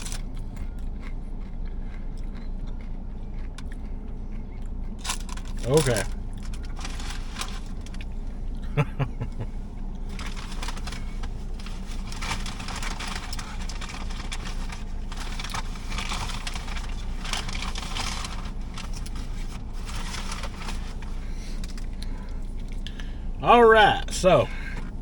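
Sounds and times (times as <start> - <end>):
paper wrapper crinkling: 5.0 - 8.1, 10.1 - 21.9
car cabin hum: 5.0 - 25.0.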